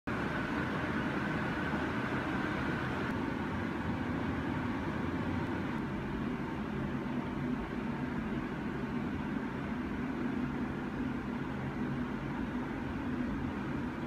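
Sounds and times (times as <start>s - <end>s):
background hum and hiss: 0.1s - 14.0s.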